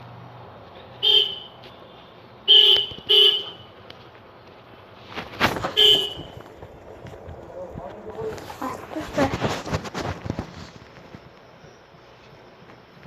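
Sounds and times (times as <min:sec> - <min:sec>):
vehicle horn tooting: 0:01.0 - 0:01.6, 0:02.5 - 0:03.8, 0:05.6 - 0:06.4.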